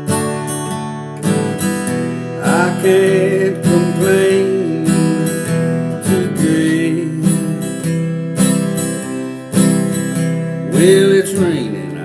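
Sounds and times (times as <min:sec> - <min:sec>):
acoustic guitar strummed: 0:00.0 - 0:12.0
person singing: 0:01.2 - 0:08.3, 0:10.6 - 0:12.0.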